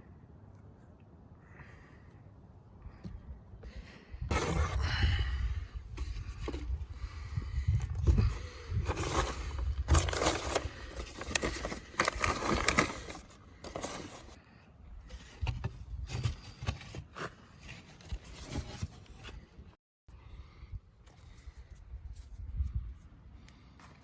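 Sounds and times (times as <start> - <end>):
scraping and rustling strokes: 8.0 - 14.4.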